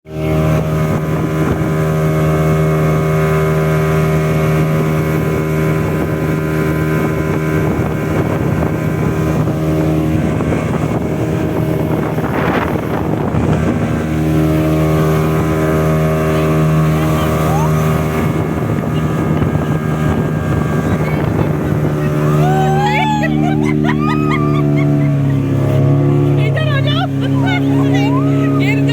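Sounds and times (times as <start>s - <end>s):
rushing water: 0.1s - 28.9s
speedboat engine running: 0.1s - 28.9s
wind on microphone: 0.2s - 28.9s.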